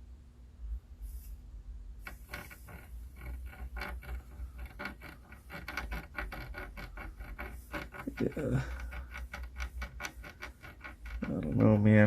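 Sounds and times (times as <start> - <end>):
steady low hum: 0.0 - 12.0
scrubbing on circuit board: 2.0 - 12.0.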